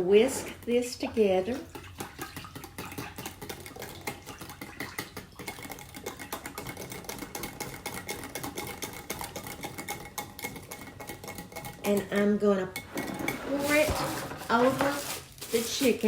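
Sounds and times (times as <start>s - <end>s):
whisk clicking against bowl: 1.7s - 14.1s.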